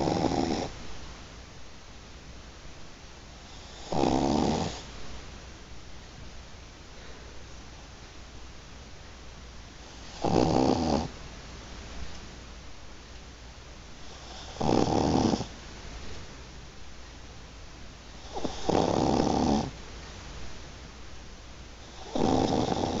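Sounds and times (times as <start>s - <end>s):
dog snoring: 0.0s - 0.8s, 3.4s - 4.9s, 9.8s - 11.2s, 14.0s - 15.6s, 18.1s - 19.8s, 21.8s - 23.0s.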